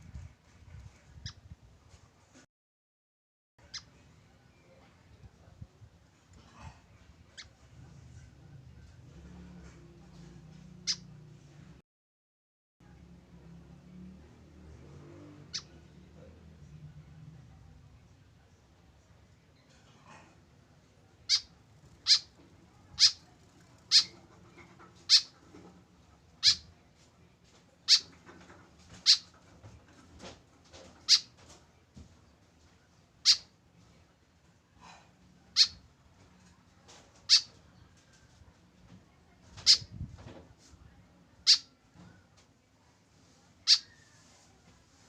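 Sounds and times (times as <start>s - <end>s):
bird calling: 21.3s - 22.3s, 22.9s - 23.2s, 23.9s - 24.1s, 25.1s - 25.3s, 29.0s - 29.2s, 41.5s - 41.7s.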